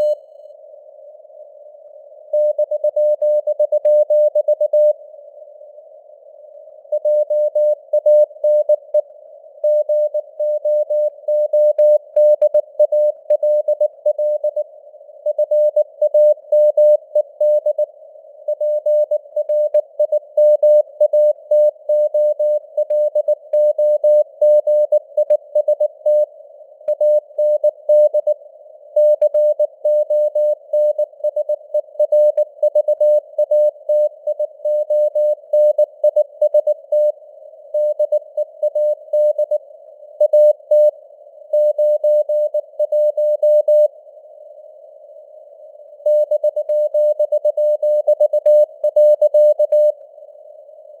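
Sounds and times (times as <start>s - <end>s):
morse code tone: 46.1s - 49.9s.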